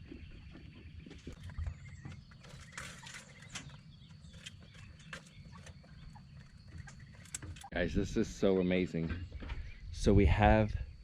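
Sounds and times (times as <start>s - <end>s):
chickens pecking at feed: 0.0s - 7.7s.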